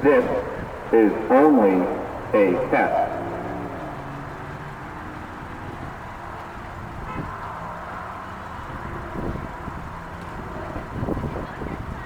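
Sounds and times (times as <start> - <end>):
road traffic noise: 0.0 - 12.0
car driving past: 1.8 - 11.4.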